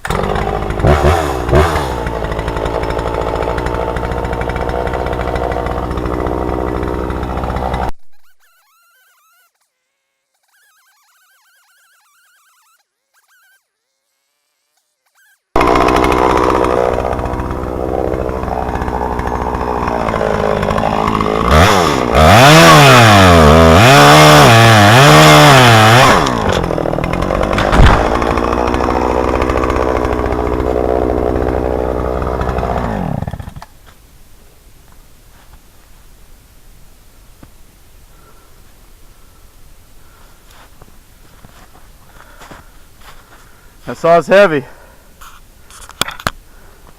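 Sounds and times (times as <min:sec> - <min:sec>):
chainsaw running: 0:00.0 - 0:07.9, 0:15.6 - 0:33.7, 0:43.9 - 0:44.8
chainsaw winding down: 0:00.0 - 0:07.9, 0:15.6 - 0:33.7
chainsaw cutting wood: 0:00.0 - 0:10.6, 0:12.7 - 0:33.8, 0:43.9 - 0:44.6
sharp knock: 0:27.7 - 0:28.2.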